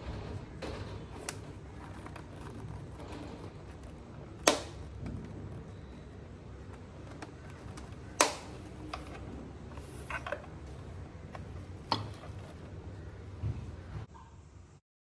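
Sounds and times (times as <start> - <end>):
sharp clicks and knocks: 0.0 - 5.9, 6.6 - 12.7.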